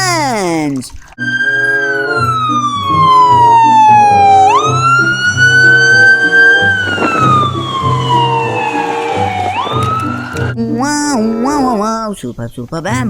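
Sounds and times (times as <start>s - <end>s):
siren wailing: 1.2s - 10.6s
background music: 1.2s - 12.2s.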